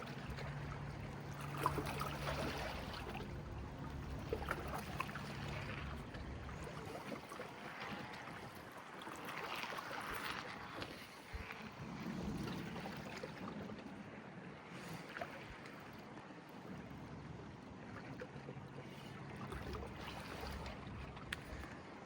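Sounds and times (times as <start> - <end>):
water and wind noise: 0.0 - 22.0.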